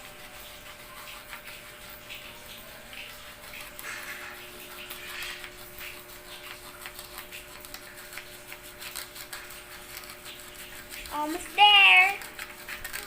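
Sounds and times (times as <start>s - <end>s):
plastic toys clicking and rustling: 10.8s - 13.0s.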